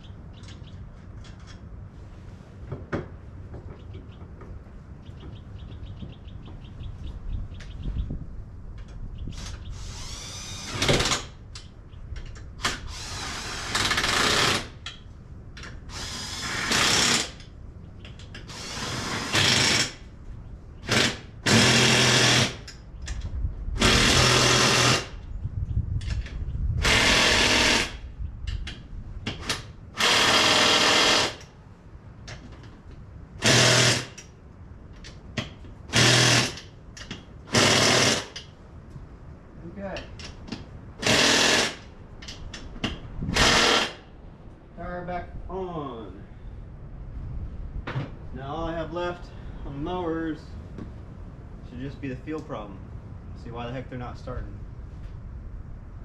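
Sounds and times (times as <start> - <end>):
power tool bursts: 12.6 - 14.8, 15.9 - 17.4, 18.5 - 20.0, 20.8 - 22.6, 23.8 - 25.1, 26.8 - 28.0, 30.0 - 31.5, 33.4 - 34.2, 35.9 - 36.7, 37.5 - 38.4, 41.0 - 41.9, 43.3 - 44.0.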